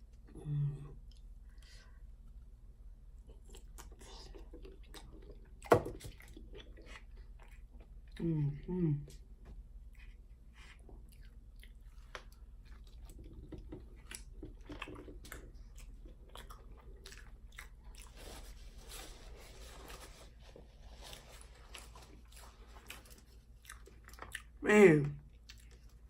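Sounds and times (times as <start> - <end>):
person chewing and biting: 9.9 - 19.0, 20.8 - 24.6.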